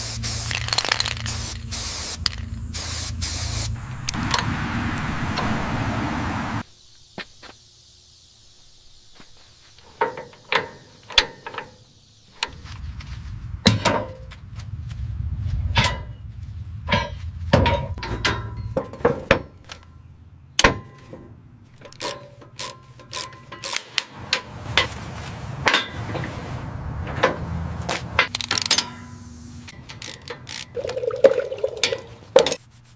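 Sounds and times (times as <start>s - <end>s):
low steady hum: 0.0s - 6.6s, 12.5s - 20.6s
tools knocking and clanking on metal: 9.9s - 11.8s, 17.0s - 19.9s.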